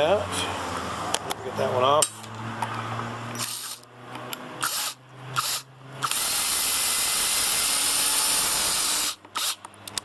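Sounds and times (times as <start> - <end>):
electric screwdriver whirring: 3.4 - 3.9, 4.6 - 9.6.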